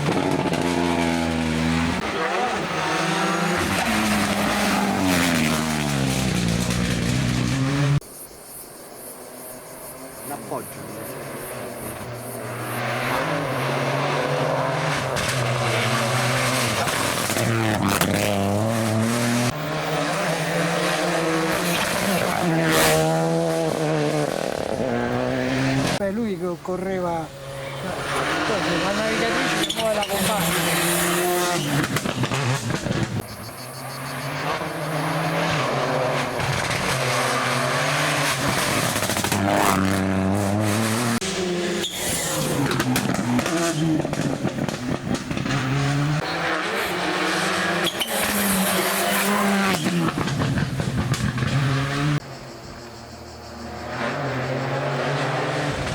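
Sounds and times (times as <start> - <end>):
rally car engine revving: 0.0 - 8.0, 10.2 - 26.0, 26.8 - 52.3, 53.5 - 55.9.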